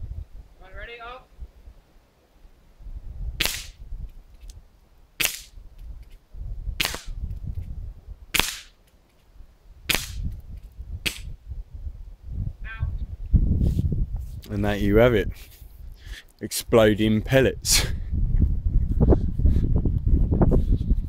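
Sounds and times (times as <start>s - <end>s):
air rifle firing: 3.4s - 3.8s, 6.8s - 7.2s, 8.4s - 8.8s, 9.9s - 10.3s.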